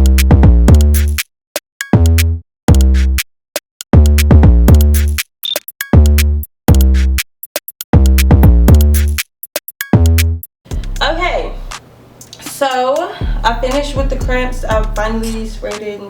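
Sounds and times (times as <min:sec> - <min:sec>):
electronic hip-hop music: 0:00.0 - 0:01.2, 0:03.9 - 0:07.2, 0:07.8 - 0:09.2, 0:09.9 - 0:11.8, 0:12.6 - 0:16.0.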